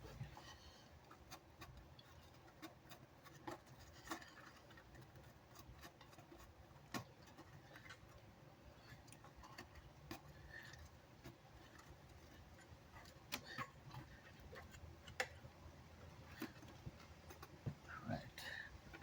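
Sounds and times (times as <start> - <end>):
faint clicks and taps: 0.0 - 19.0.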